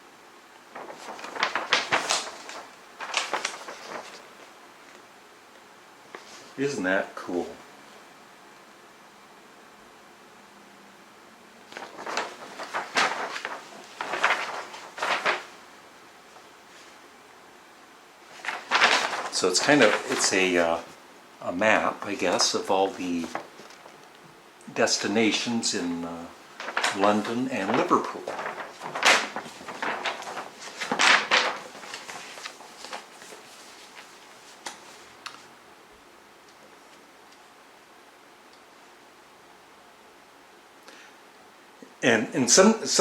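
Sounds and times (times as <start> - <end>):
paper poster crackling: 0.6 - 5.1, 11.6 - 17.1, 18.2 - 24.2, 24.8 - 35.5.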